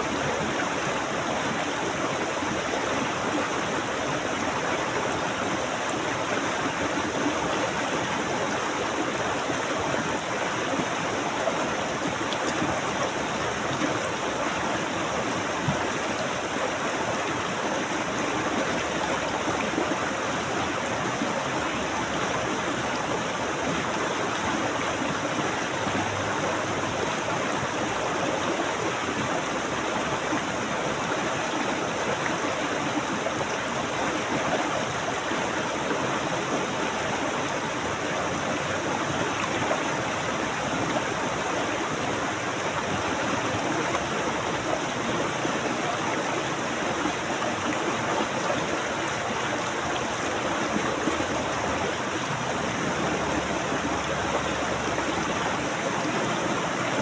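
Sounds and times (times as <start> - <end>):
stream water rushing and babbling: 0.0 - 57.0.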